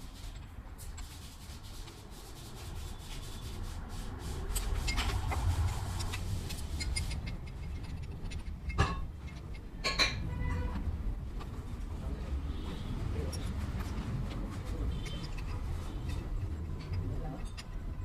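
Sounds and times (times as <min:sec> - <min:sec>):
metal tools scraping: 0:04.4 - 0:10.8, 0:12.7 - 0:18.0.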